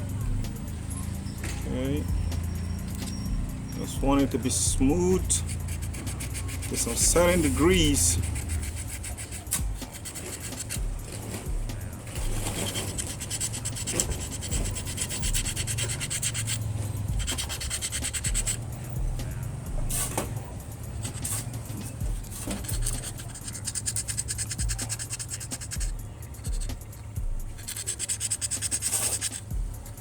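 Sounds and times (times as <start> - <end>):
brush scrubbing rusty metal: 1.6 - 30.0.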